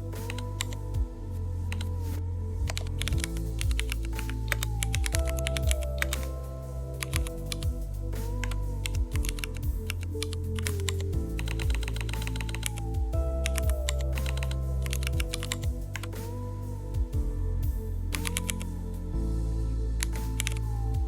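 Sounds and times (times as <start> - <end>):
background music: 0.0 - 21.0
computer keyboard typing: 10.2 - 12.8.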